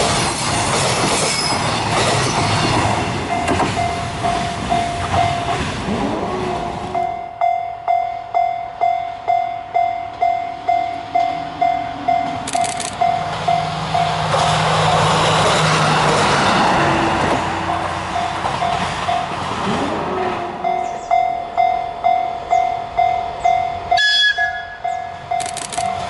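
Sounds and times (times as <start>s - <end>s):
diesel train engine and wheels: 0.0s - 26.0s
train running over rails: 0.0s - 26.0s
level crossing bell ringing: 7.0s - 12.4s.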